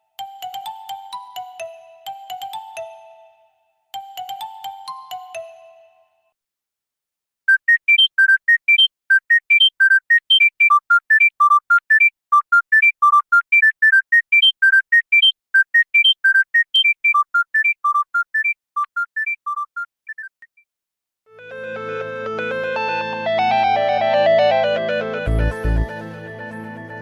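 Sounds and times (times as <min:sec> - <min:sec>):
phone ringtone beeping melody: 0:07.5 - 0:20.6.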